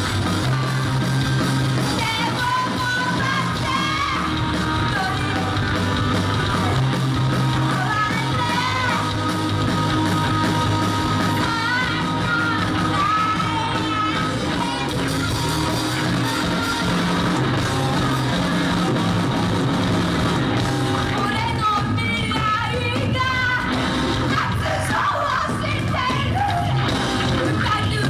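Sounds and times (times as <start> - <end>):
rock band playing live: 0.0 - 28.0
lead singer singing: 7.7 - 15.5.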